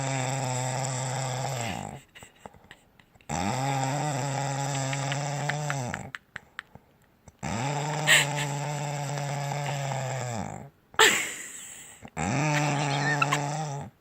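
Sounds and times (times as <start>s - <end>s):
loud buzzing snores: 0.0s - 2.0s, 3.3s - 6.1s, 7.4s - 10.7s, 12.1s - 13.9s.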